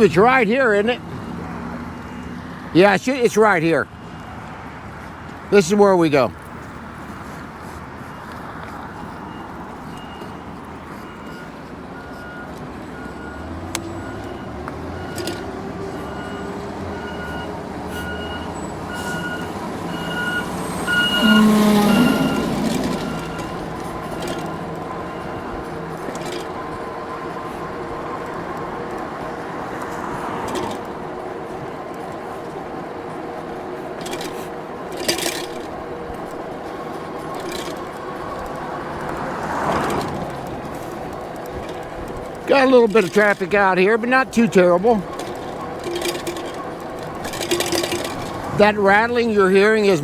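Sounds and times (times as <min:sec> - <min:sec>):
wind and road noise: 0:00.0 - 0:50.0
metal mug rattling on frame: 0:45.1 - 0:48.6.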